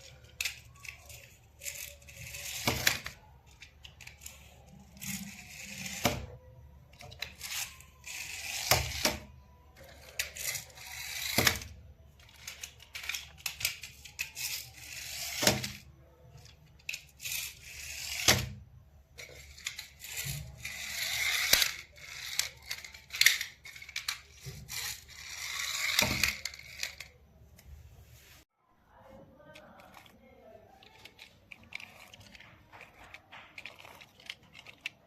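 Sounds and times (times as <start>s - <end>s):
packaging crinkling and tearing: 29.8s - 35.0s.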